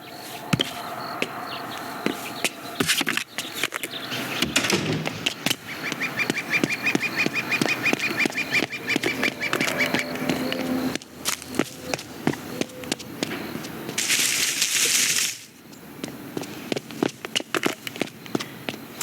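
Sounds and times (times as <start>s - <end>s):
squeaky quack-like pulses: 5.6s - 11.0s.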